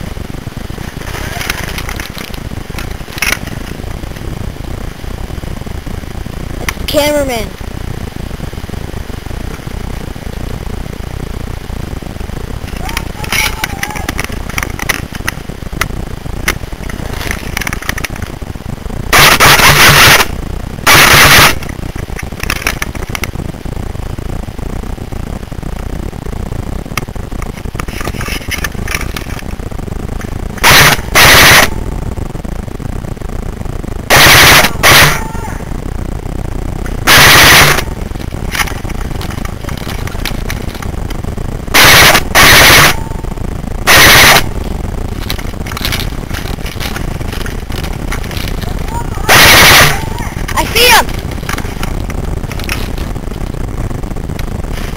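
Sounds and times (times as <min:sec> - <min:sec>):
airsoft gun firing bursts: 0:19.1 - 0:21.6, 0:34.1 - 0:35.2, 0:41.8 - 0:43.0, 0:43.9 - 0:44.5.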